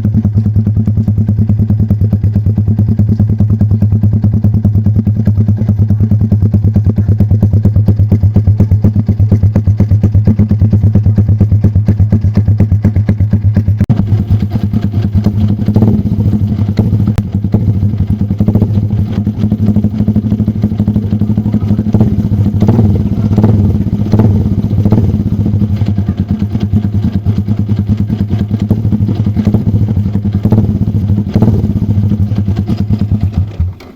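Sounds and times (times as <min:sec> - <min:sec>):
motorcycle exhaust running loud: 0:00.0 - 0:33.9
sharp exhaust cracks: 0:00.2 - 0:33.9.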